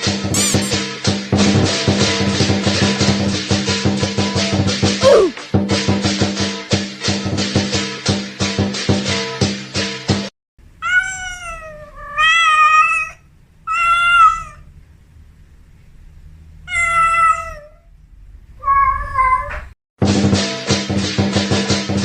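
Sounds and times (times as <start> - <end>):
cat meowing: 0.4 - 0.8, 5.0 - 5.4, 10.8 - 14.7, 16.7 - 18.0, 18.6 - 19.7.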